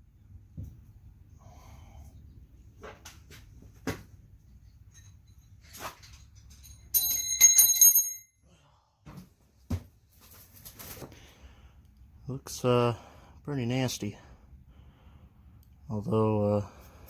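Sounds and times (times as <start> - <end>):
metal engine parts clinking: 4.7 - 8.3
ringing metal clatter: 4.8 - 8.4.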